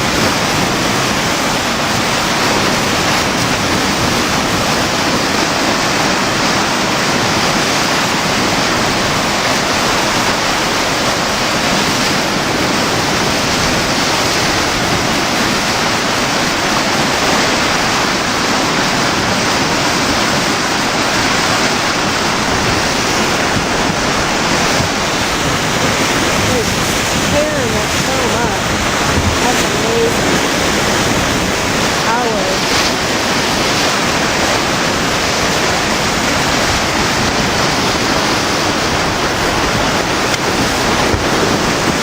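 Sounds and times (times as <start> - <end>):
floodwater rushing: 0.0 - 42.0.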